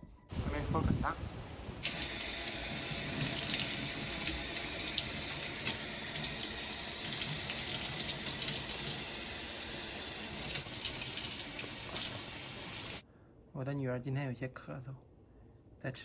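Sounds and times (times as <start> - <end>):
water running from tap: 1.6 - 13.0.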